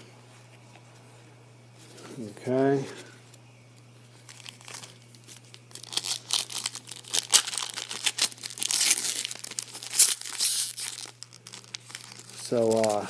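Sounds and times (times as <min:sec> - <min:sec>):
steady low hum: 0:00.0 - 0:13.0
foil wrapper tearing and crinkling: 0:04.2 - 0:13.0.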